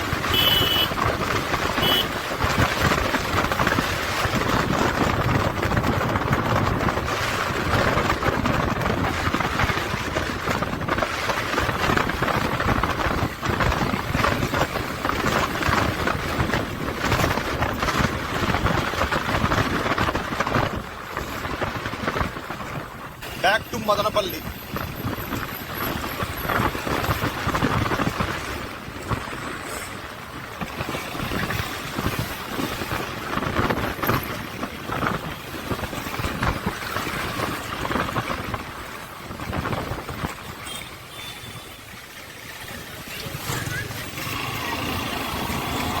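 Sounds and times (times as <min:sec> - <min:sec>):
motorcycle engine: 0:00.0 - 0:09.1, 0:43.0 - 0:46.0
road noise: 0:00.0 - 0:46.0
wind on microphone: 0:00.0 - 0:46.0.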